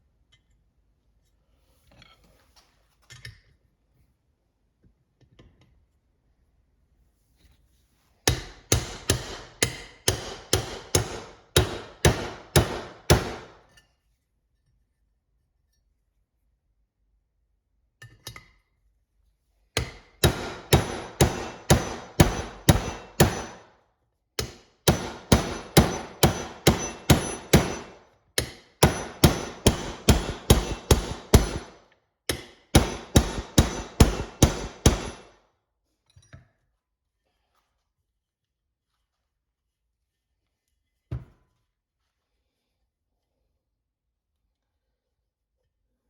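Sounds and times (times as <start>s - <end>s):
hammer striking metal bushing driver: 8.3s - 13.6s, 19.8s - 23.6s, 24.4s - 35.3s.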